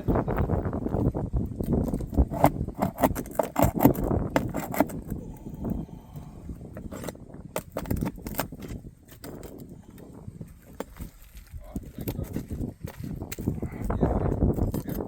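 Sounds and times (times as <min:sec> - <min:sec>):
hand tool scraping shingles: 0:01.6 - 0:10.1.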